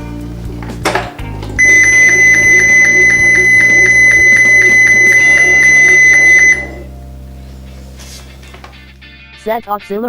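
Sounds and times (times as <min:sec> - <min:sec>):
faint background music: 0:00.0 - 0:10.0
alarm buzzer high-pitched tone: 0:01.6 - 0:06.9.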